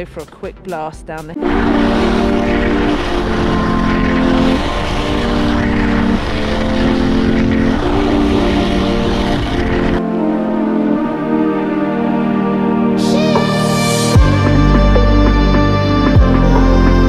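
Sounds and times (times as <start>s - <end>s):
background music of held chords: 0.0s - 17.0s
wind buffeting microphone: 1.4s - 10.4s.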